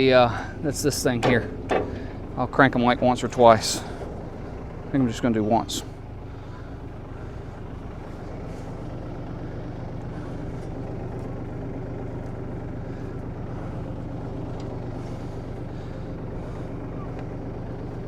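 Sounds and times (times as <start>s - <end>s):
tractor engine running: 0.0s - 18.0s.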